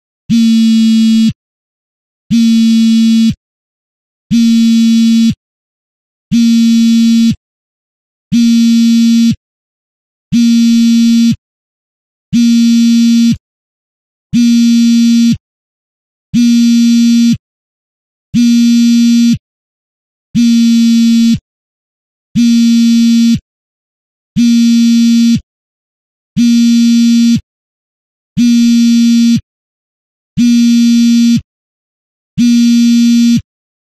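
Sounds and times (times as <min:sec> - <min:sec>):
phone vibrating on fabric: 0:00.3 - 0:01.4, 0:02.3 - 0:03.4, 0:04.3 - 0:05.4, 0:06.3 - 0:07.4, 0:08.3 - 0:09.4, 0:10.3 - 0:11.4, 0:12.4 - 0:13.4, 0:14.4 - 0:15.4, 0:16.4 - 0:17.4, 0:18.4 - 0:19.4, 0:20.4 - 0:21.4, 0:22.4 - 0:23.4, 0:24.4 - 0:25.4, 0:26.4 - 0:27.4, 0:28.4 - 0:29.4, 0:30.4 - 0:31.5, 0:32.4 - 0:33.5.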